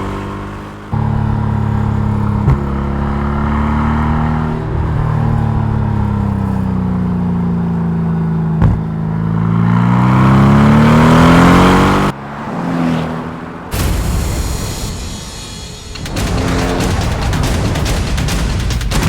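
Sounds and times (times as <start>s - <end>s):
car engine accelerating: 0.0s - 19.0s
sharp crack: 13.7s - 19.0s.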